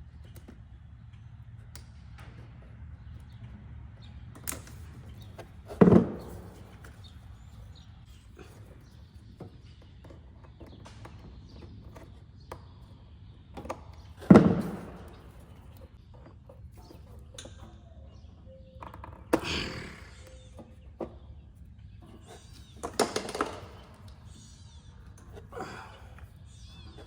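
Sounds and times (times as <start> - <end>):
tools and parts knocking: 22.0 - 24.4.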